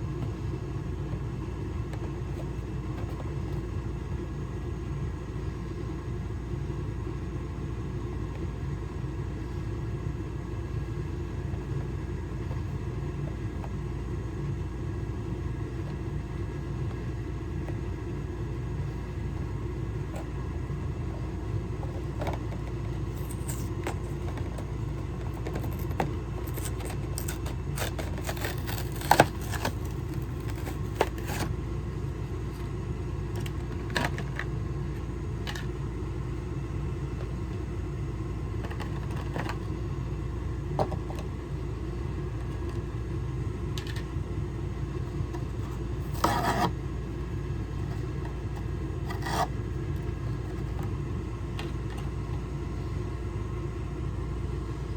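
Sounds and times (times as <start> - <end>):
plastic packaging clicks and crinkles: 22.3 - 31.5.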